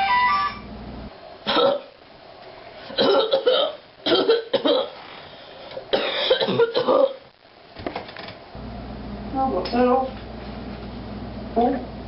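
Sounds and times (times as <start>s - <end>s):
person coughing: 1.5s - 1.9s, 2.9s - 5.0s, 5.9s - 7.2s.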